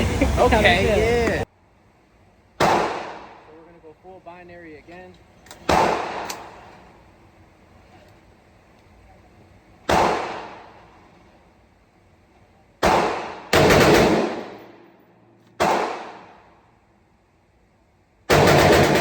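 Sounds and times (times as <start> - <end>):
gunshots with ringing echo: 2.6 - 3.5, 5.6 - 6.7, 9.9 - 10.8, 12.8 - 16.6, 18.3 - 19.0.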